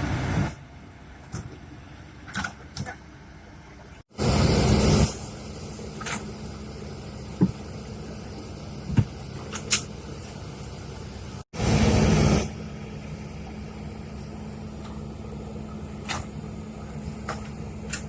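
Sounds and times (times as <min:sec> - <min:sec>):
heavy diesel engine running: 0:04.1 - 0:18.0.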